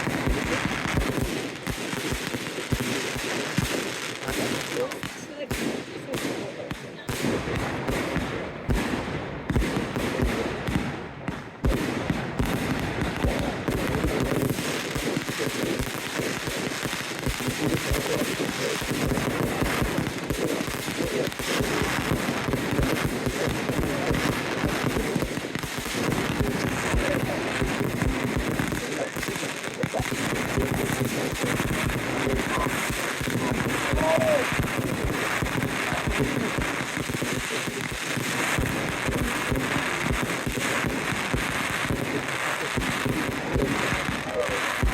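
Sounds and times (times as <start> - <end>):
crowd voices: 0.0 - 1.6, 4.0 - 11.8, 26.1 - 44.9
fireworks bangs and crackling: 0.0 - 44.9.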